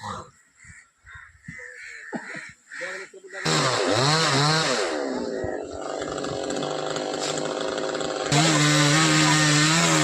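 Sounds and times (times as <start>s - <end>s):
chainsaw engine running: 3.4s - 10.0s.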